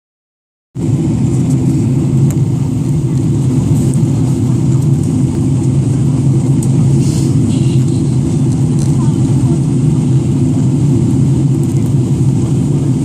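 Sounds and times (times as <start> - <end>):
airplane cabin rumble: 0.8 - 13.0.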